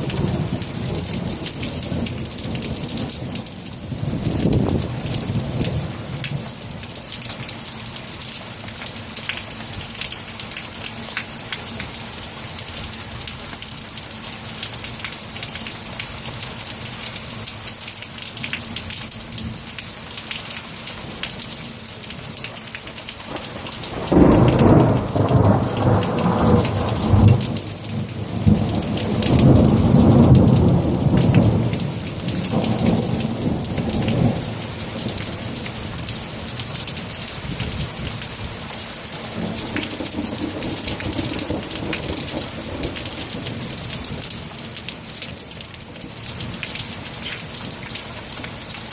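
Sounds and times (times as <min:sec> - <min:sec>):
steady rain: 0:00.0 - 0:48.9
thunder rumbling: 0:23.9 - 0:35.2, 0:39.4 - 0:43.9.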